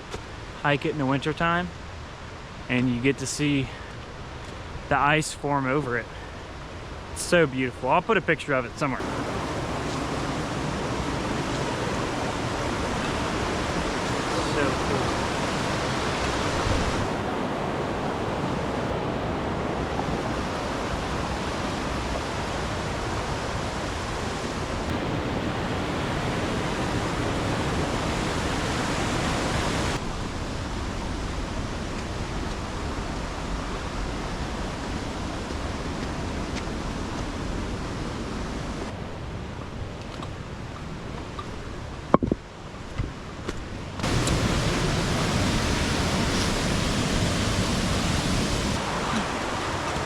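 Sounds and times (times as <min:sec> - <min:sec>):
falling water rushing: 0:08.8 - 0:39.0, 0:44.0 - 0:50.0.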